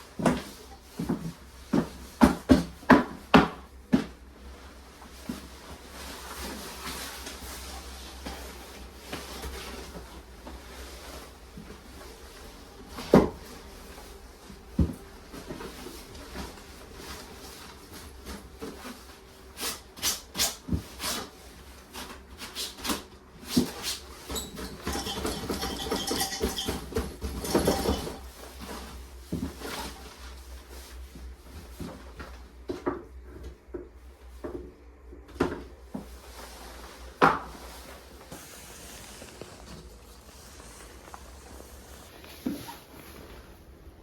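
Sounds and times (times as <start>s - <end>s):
objects being handled: 36.0s - 43.5s.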